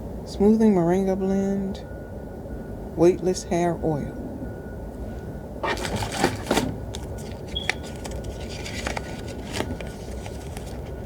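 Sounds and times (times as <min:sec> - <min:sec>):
low background noise: 0:00.0 - 0:11.0
package and bottle handling clicks: 0:05.6 - 0:11.0.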